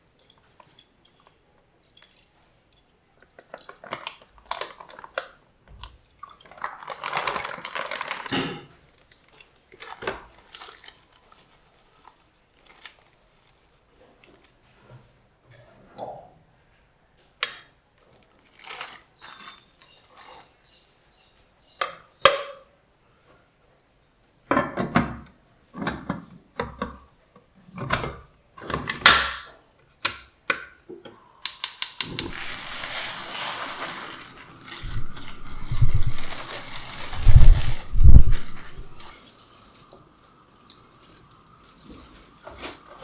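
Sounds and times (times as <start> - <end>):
utensils and dishes clattering: 31.5 - 39.1
tap running water: 31.5 - 43.0.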